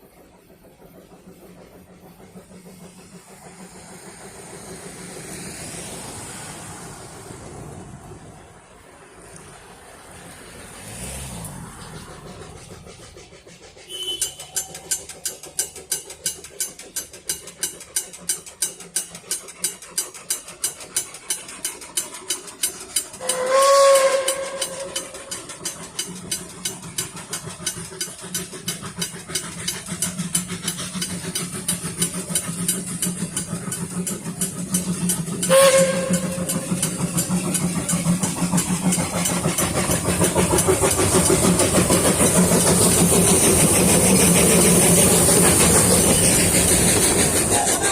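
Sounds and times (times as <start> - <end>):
steam hissing: 0.0 - 47.9
steam locomotive chugging: 0.0 - 47.9
steam whistle blasts: 13.8 - 14.8, 23.2 - 25.4, 35.4 - 37.0.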